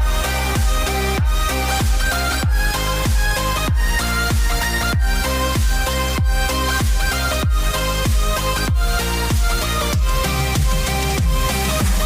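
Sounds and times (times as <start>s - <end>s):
electronic dance music: 0.0s - 12.0s
thumping kick drum: 0.0s - 12.0s.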